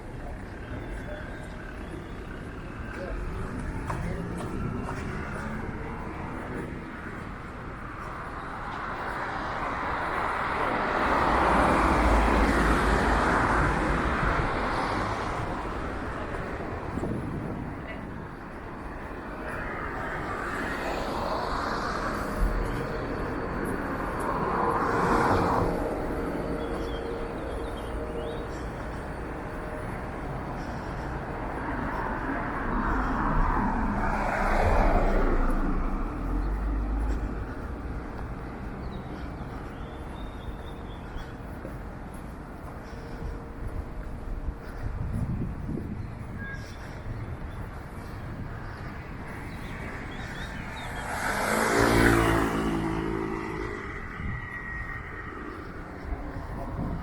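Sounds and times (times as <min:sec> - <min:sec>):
city traffic: 0:00.0 - 0:57.0
vehicle passing: 0:09.0 - 0:40.3, 0:49.0 - 0:57.0
vehicle passing by: 0:49.1 - 0:57.0.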